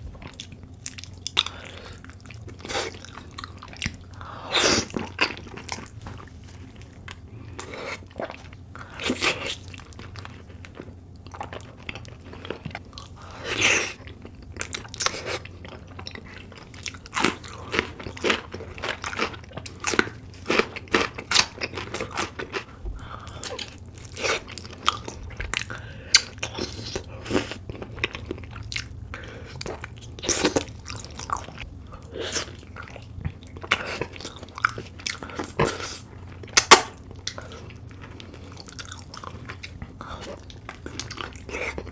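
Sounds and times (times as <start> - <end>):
crunchy chewing: 0.0 - 41.9.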